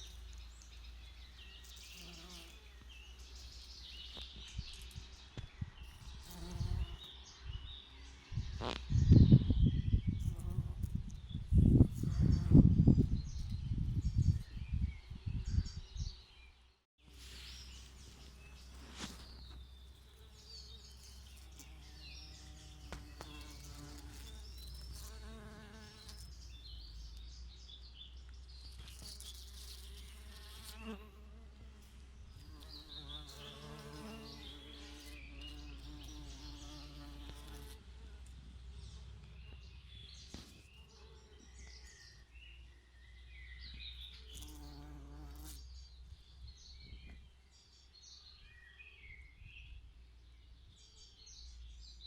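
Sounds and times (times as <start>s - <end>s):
birds chirping: 0.0s - 52.0s
bees buzzing: 17.5s - 26.5s.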